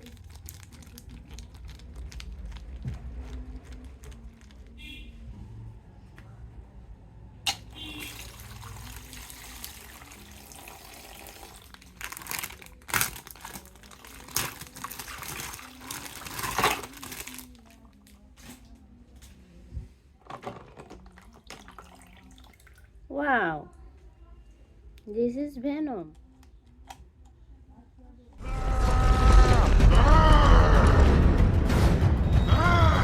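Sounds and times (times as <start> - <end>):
plastic packaging crinkling: 0.0 - 4.8, 11.4 - 18.7.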